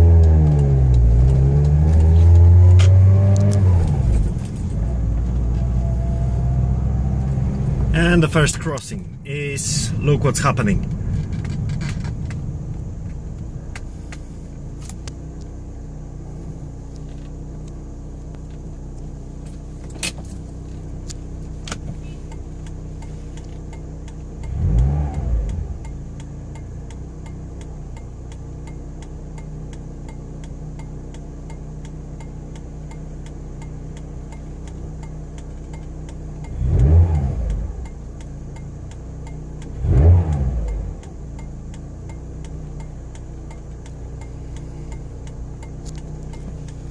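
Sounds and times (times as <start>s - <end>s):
engine revving: 0.0s - 8.8s, 24.4s - 26.3s, 36.4s - 38.6s, 39.6s - 46.9s
car engine idling: 0.0s - 46.9s.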